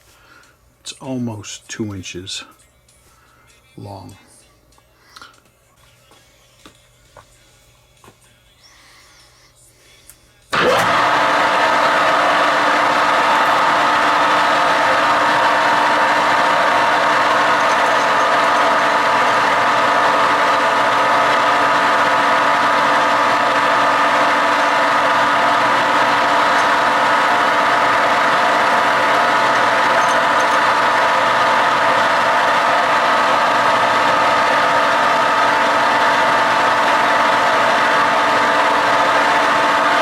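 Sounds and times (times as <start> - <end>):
metal lathe humming: 10.6 - 40.0.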